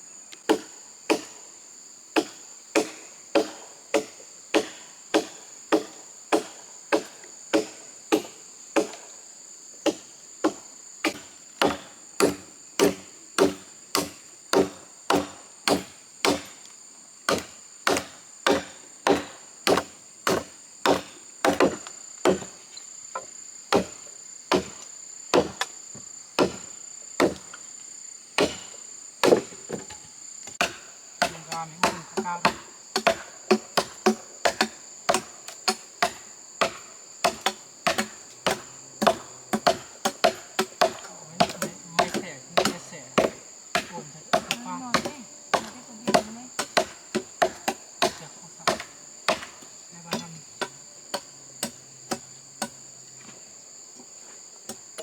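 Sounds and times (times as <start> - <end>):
insects droning: 0.0 - 55.0
hand blade chopping wood: 9.9 - 16.6, 17.3 - 22.5, 23.7 - 25.7, 26.4 - 27.5, 28.4 - 52.8.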